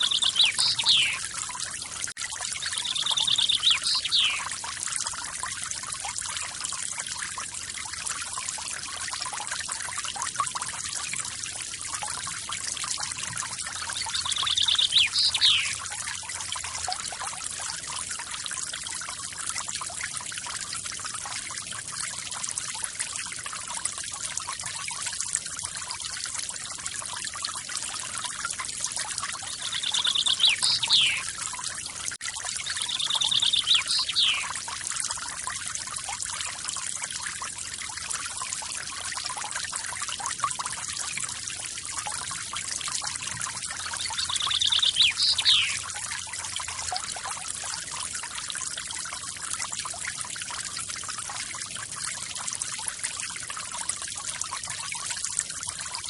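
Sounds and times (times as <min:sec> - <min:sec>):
bird buzzy trill and whistle: 0:00.0 - 0:01.2, 0:02.6 - 0:04.4, 0:14.0 - 0:15.8, 0:29.5 - 0:31.3, 0:32.6 - 0:34.5, 0:44.0 - 0:45.8.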